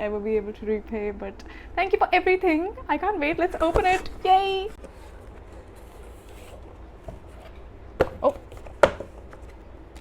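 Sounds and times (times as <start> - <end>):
cardboard box being opened: 3.4 - 6.6.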